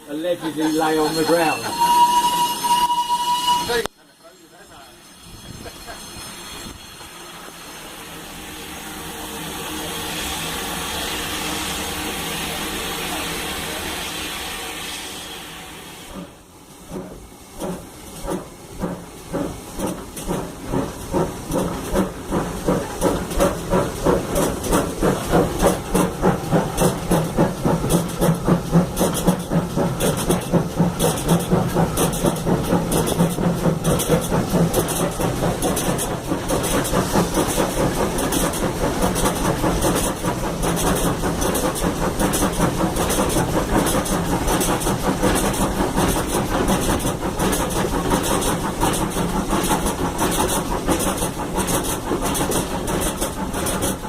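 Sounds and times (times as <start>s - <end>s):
steam locomotive hissing steam: 0.0s - 54.0s.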